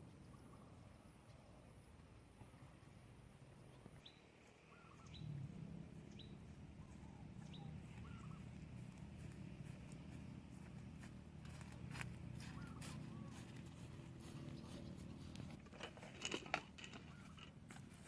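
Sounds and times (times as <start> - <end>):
high bird chirps: 4.0 - 5.4, 6.0 - 8.6.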